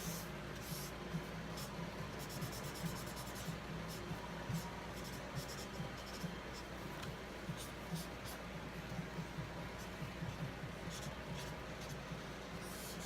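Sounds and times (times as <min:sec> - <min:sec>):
pen scratching on paper: 0:00.0 - 0:00.9, 0:01.6 - 0:06.6, 0:07.5 - 0:08.4, 0:09.8 - 0:12.0, 0:12.6 - 0:13.0
steady low hum: 0:00.0 - 0:13.0.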